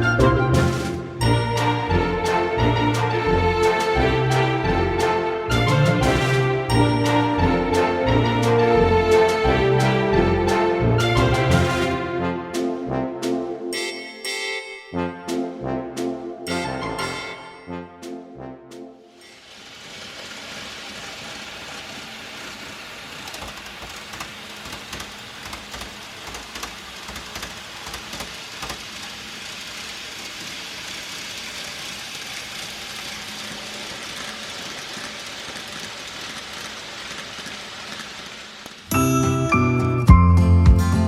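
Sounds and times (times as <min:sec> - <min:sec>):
model train rolling on track: 0:00.0 - 0:12.3, 0:19.2 - 0:39.8.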